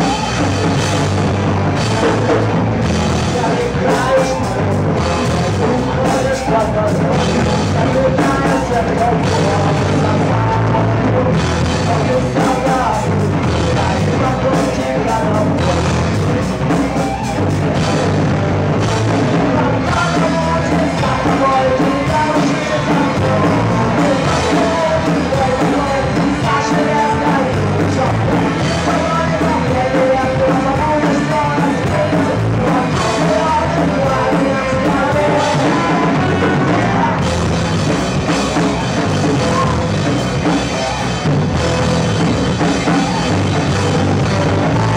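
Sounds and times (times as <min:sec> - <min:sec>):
bass guitar: 0:00.0 - 0:44.9
distorted electric guitars: 0:00.0 - 0:44.9
drum kit: 0:00.0 - 0:44.9
man singing: 0:00.0 - 0:44.9.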